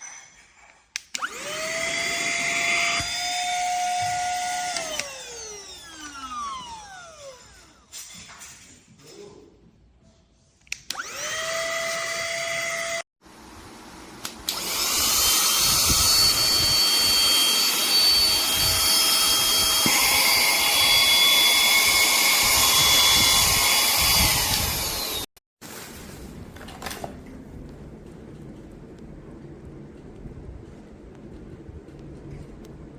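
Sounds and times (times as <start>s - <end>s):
handheld vacuum cleaner running: 1.2s - 7.9s, 10.9s - 25.3s.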